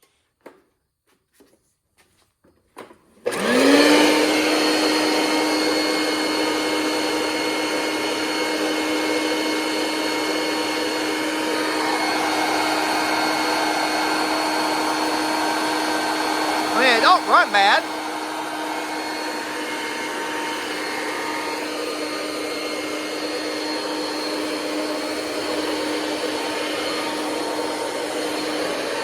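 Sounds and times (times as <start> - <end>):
vacuum cleaner motor running: 3.2 - 29.0.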